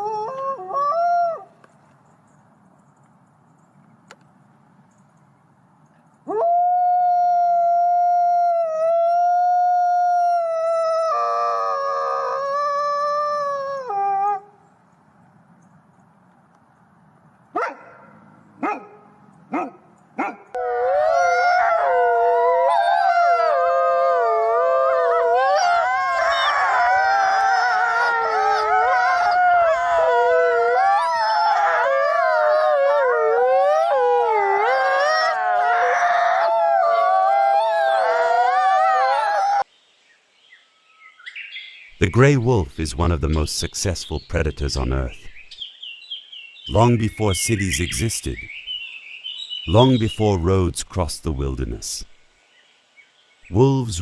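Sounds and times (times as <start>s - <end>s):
wolf yips: 17.6s - 20.6s, 25.5s - 30.0s
wolves howling in chorus: 19.6s - 39.6s.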